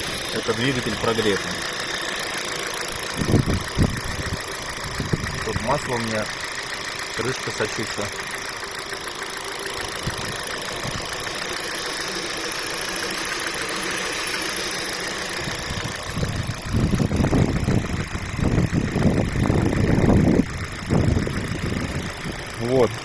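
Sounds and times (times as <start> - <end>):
car engine idling with knock: 0.0 - 23.0
low rumbling and thumps: 3.0 - 5.9, 15.4 - 23.0.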